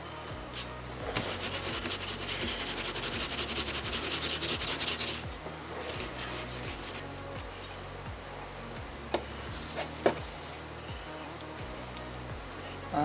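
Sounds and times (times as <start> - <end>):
brush scrubbing metal: 0.5 - 7.8.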